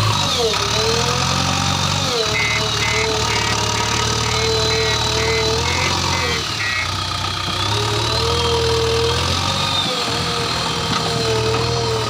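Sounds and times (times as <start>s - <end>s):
diesel engine running: 0.0s - 12.0s
rapid beeping: 2.2s - 7.4s.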